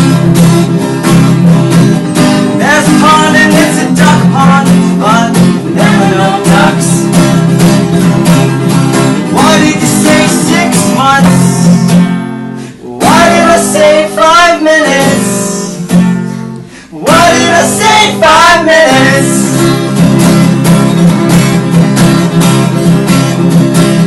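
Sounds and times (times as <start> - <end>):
strummed guitar: 0.0 - 24.0
person singing: 2.6 - 7.2, 9.2 - 11.9, 12.6 - 15.9, 16.6 - 19.8.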